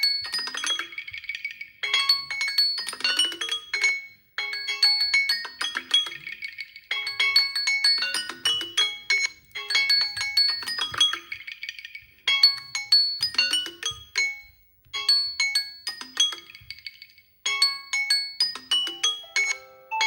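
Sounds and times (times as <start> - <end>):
phone alarm melody: 18.8 - 20.0.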